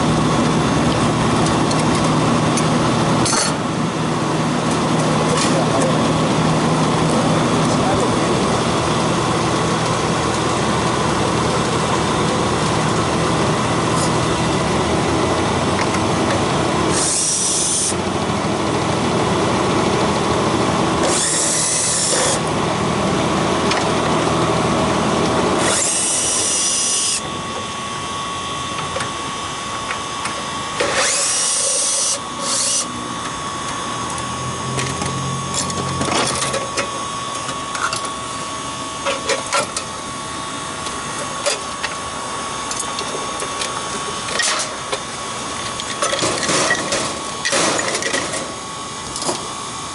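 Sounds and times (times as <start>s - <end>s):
steady mechanical running noise: 0.0s - 49.9s
power tool bursts: 16.9s - 17.9s, 21.0s - 22.4s, 25.6s - 27.2s, 30.8s - 32.9s.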